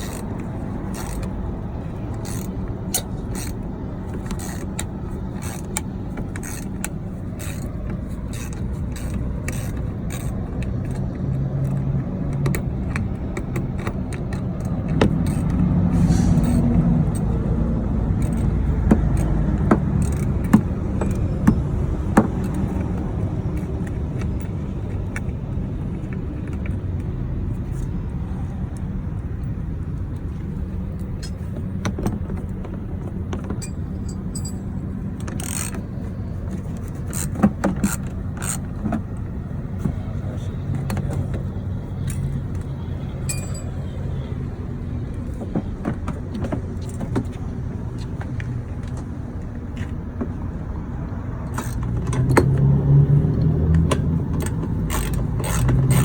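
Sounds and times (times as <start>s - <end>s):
hand tools clinking on metal: 33.5s - 35.8s, 42.0s - 44.0s, 53.8s - 56.0s.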